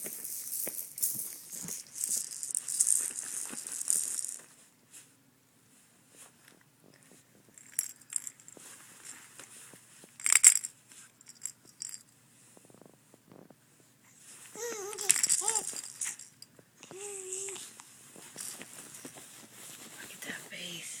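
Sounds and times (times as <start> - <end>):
toy rattle shaking: 0.0 - 4.6, 7.6 - 9.3, 10.2 - 12.0, 14.9 - 16.5, 18.3 - 19.1.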